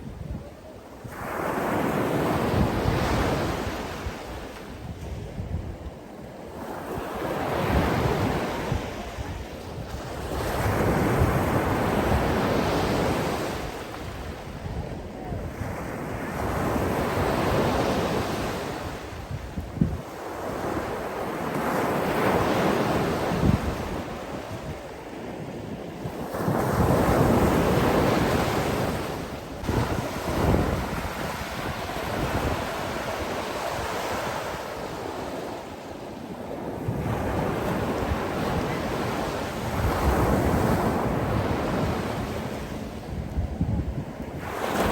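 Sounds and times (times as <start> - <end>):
sea waves breaking: 20.0 - 35.8.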